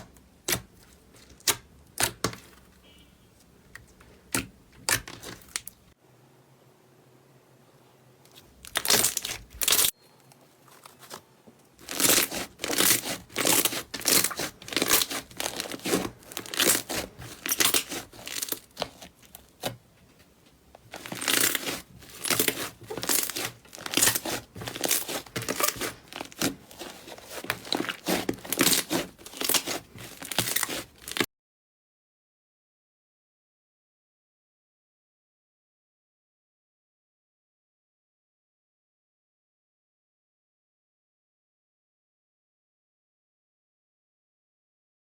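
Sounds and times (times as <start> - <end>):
slime squishing: 3.7 - 5.9, 8.3 - 9.9, 10.7 - 19.8, 20.7 - 31.3.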